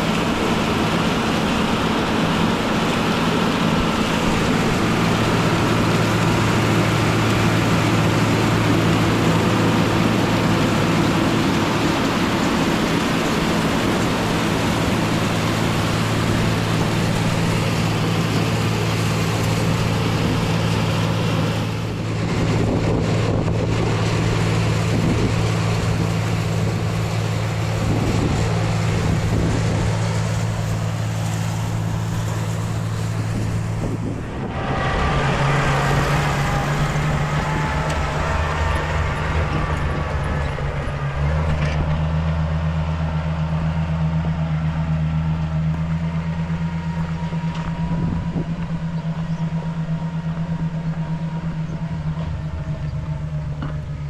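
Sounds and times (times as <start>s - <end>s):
corn picker mechanical noise: 0.0s - 54.0s
tractor engine running: 0.0s - 54.0s.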